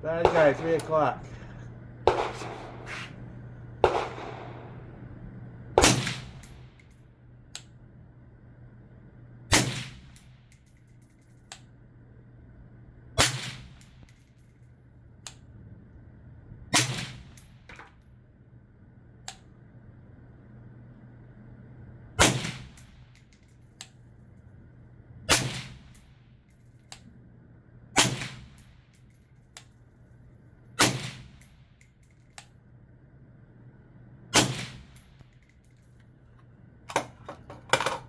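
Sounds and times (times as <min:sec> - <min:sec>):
suppressed rifle shots: 0:00.1 - 0:02.9, 0:03.8 - 0:05.0, 0:05.8 - 0:06.5, 0:34.4 - 0:35.0.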